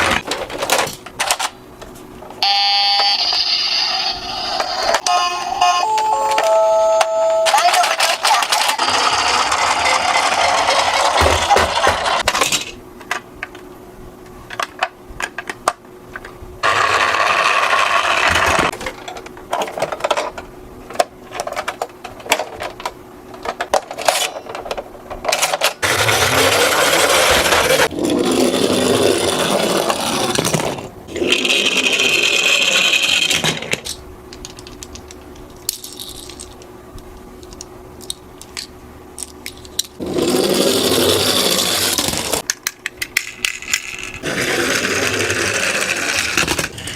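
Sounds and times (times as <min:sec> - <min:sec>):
toy cars rolling and clattering: 0:07.5 - 0:12.8, 0:16.6 - 0:20.4, 0:21.4 - 0:36.6, 0:37.4 - 0:46.9.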